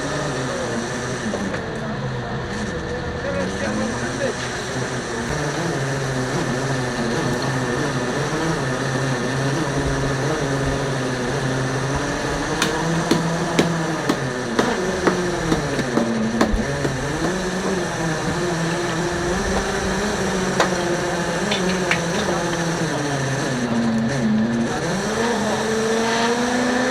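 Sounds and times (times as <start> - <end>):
boat engine running: 0.4 - 25.6
sharp knocks: 12.5 - 22.8.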